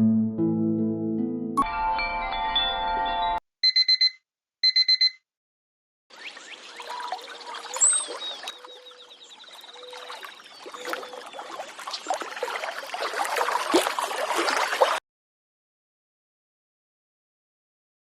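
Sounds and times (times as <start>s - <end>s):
alarm bird chirps and trill: 6.1s - 11.2s
trickling water sound: 6.1s - 15.0s.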